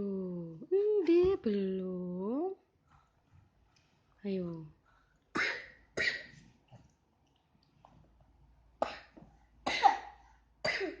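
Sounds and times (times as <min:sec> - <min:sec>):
person coughing: 0:08.8 - 0:11.0.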